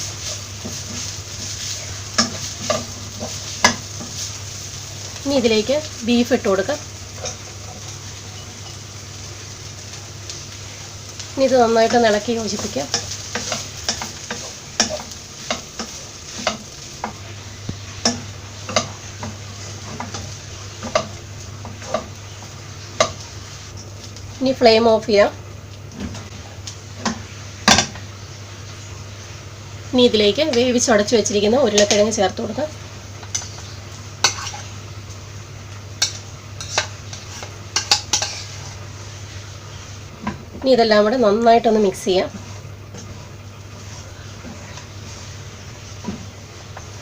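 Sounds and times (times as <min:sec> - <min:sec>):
spatula scraping a pan: 0:00.0 - 0:04.8, 0:11.7 - 0:17.3, 0:33.2 - 0:34.8, 0:36.0 - 0:40.4
low sizzle: 0:00.0 - 0:47.0.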